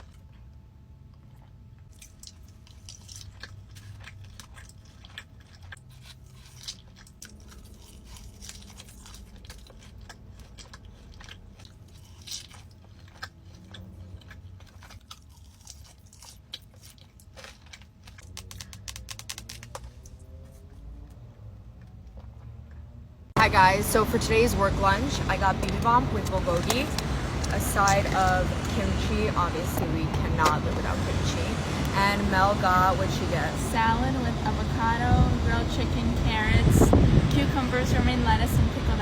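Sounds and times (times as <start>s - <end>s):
crunchy chewing: 0.0s - 22.9s.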